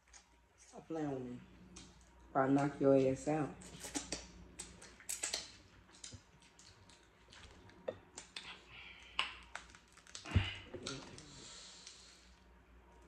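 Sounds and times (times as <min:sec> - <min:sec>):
crab shells cracking: 0:03.8 - 0:08.4, 0:09.1 - 0:11.3.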